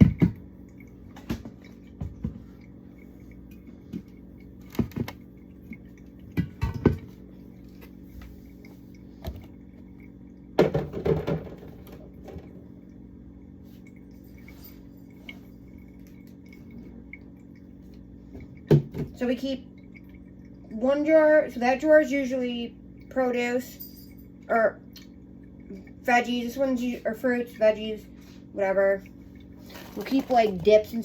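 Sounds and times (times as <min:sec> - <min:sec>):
containers knocking and clattering: 0:00.0 - 0:00.5, 0:06.2 - 0:07.2, 0:10.6 - 0:12.6, 0:18.3 - 0:19.2, 0:29.6 - 0:31.0.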